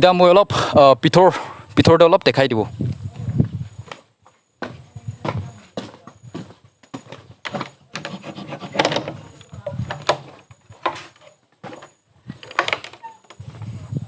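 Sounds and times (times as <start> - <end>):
footsteps on stony ground: 3.0 - 7.9.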